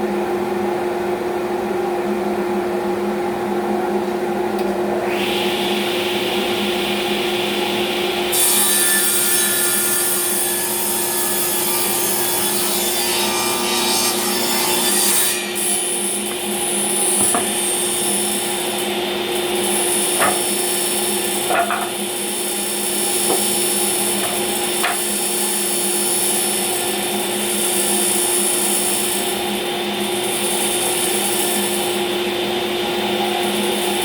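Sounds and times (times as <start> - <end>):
power saw cutting wood: 8.3 - 32.2
wood knocking: 17.2 - 17.6, 20.2 - 20.5, 21.5 - 22.0.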